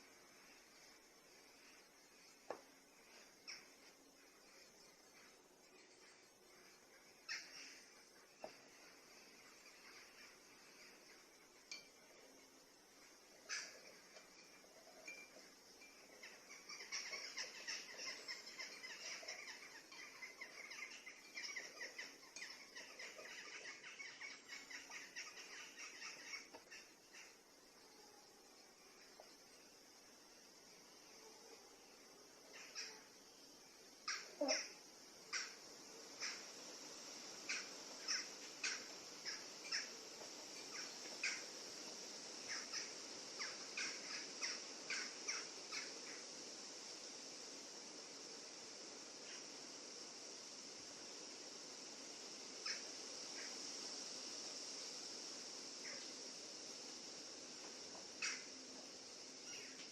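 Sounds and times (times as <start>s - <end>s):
birds calling: 0.0s - 27.6s, 34.0s - 46.9s, 57.5s - 59.9s
songbirds chirping: 0.0s - 59.9s
steady background hiss: 0.0s - 59.9s.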